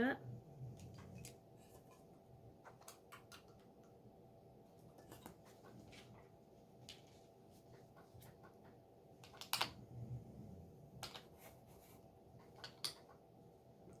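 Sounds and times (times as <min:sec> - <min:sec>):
plastic bricks clicking together: 0:09.2 - 0:09.8, 0:12.4 - 0:13.1.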